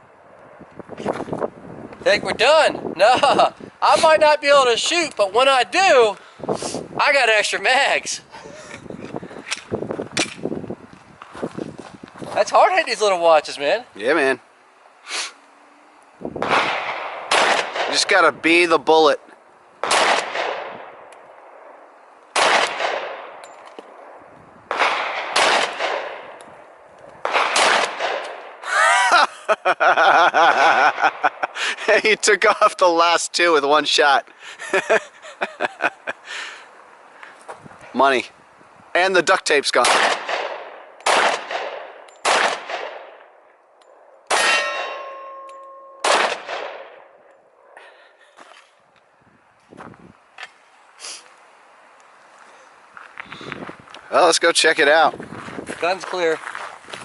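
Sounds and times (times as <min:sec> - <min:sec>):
pistol shots with echo: 0:16.4 - 0:18.1, 0:19.8 - 0:23.5, 0:24.7 - 0:26.4, 0:27.2 - 0:28.6, 0:39.8 - 0:47.2
ringing tone: 0:44.6 - 0:46.1.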